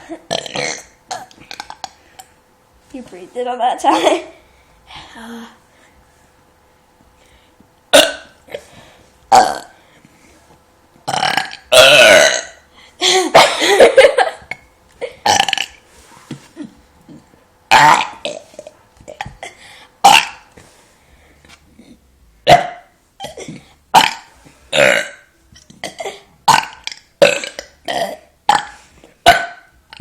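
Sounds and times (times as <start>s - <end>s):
person burping: 0.0s - 2.0s, 7.9s - 8.7s, 9.3s - 9.8s, 11.0s - 15.8s, 16.6s - 20.5s, 21.8s - 30.0s.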